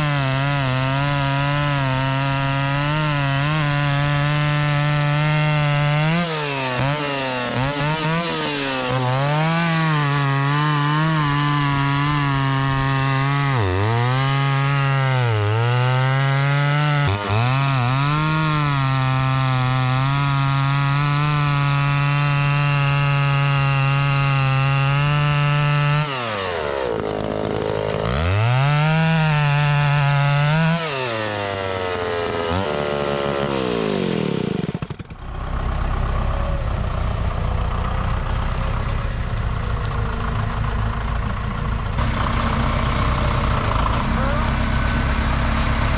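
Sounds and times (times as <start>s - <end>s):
chainsaw cutting wood: 0.0s - 45.9s.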